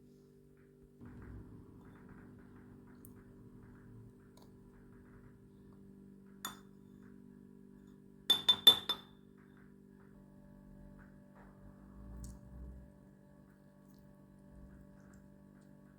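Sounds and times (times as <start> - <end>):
faint background music: 0.0 - 15.9
utensil clinking against glass: 8.3 - 9.1.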